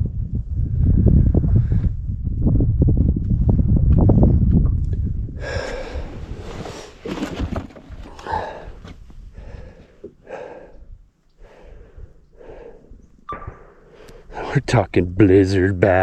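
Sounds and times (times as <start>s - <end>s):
wind buffeting microphone: 0.0s - 16.0s
heavy breathing: 5.4s - 7.0s, 8.0s - 14.7s.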